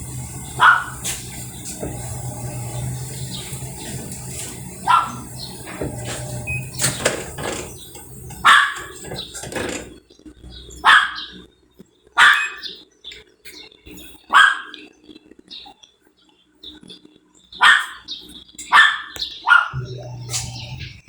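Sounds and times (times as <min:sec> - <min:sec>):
low hum: 0:00.0 - 0:09.9, 0:19.8 - 0:21.0
dog barking: 0:00.6 - 0:01.2, 0:04.8 - 0:05.3, 0:08.4 - 0:09.0, 0:10.8 - 0:11.3, 0:12.2 - 0:12.6, 0:14.3 - 0:14.8, 0:17.6 - 0:18.1, 0:18.7 - 0:19.8.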